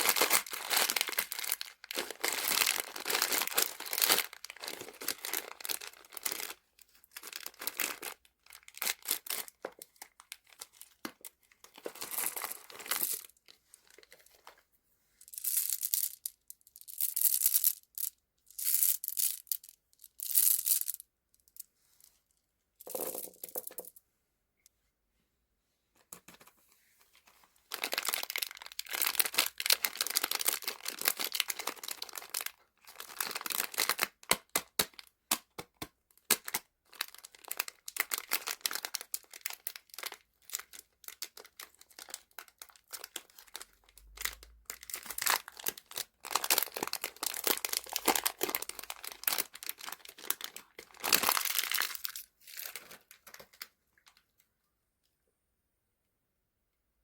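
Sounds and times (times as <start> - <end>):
plastic wrappers crinkling and tearing: 0.0 - 14.5, 27.6 - 54.2.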